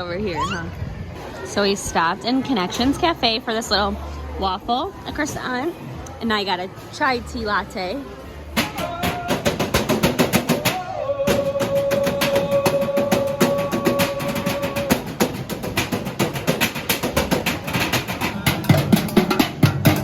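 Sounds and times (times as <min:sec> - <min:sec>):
fast steady drumming: 0:08.6 - 0:20.0.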